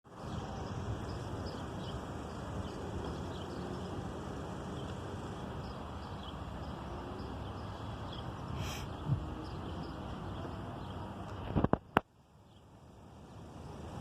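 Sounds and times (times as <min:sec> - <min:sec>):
distant traffic rumble: 0:00.1 - 0:14.0
small birds chirping: 0:00.1 - 0:14.0.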